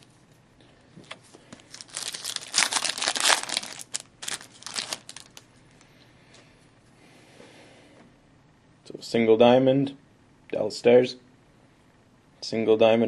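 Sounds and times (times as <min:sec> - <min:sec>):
card pack wrapper crinkling and tearing: 0:01.5 - 0:05.5.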